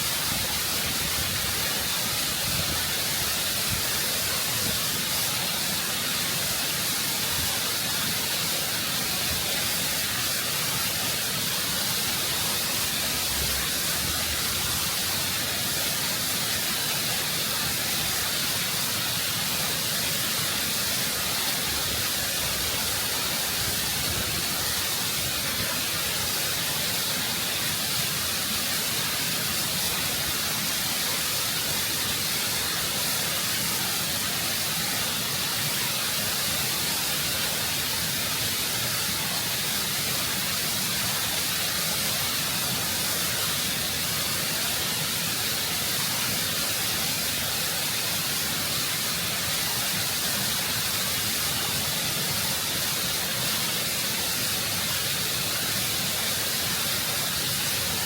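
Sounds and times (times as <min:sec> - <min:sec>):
waterfall rushing over rock: 0:00.0 - 0:58.0.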